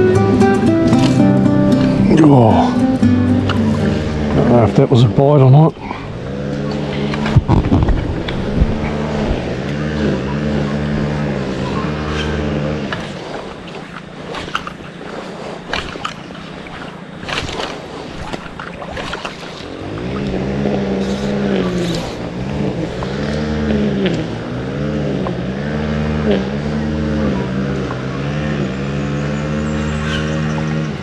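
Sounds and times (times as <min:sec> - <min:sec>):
engine revving: 0:00.0 - 0:31.0
hiss: 0:21.0 - 0:22.4.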